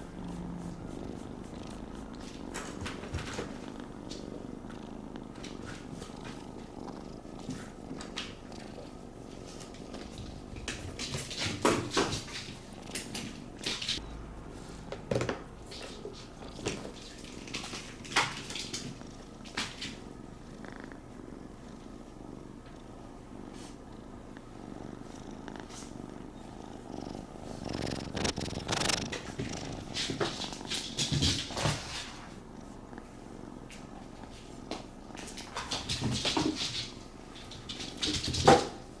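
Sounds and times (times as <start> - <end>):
cat purring: 0.0 - 39.0.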